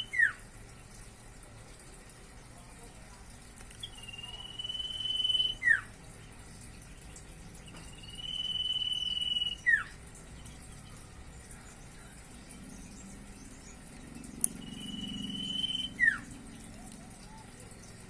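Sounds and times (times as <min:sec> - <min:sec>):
bird whistling song: 0:00.0 - 0:00.4, 0:03.8 - 0:05.9, 0:07.7 - 0:10.6, 0:12.4 - 0:18.0.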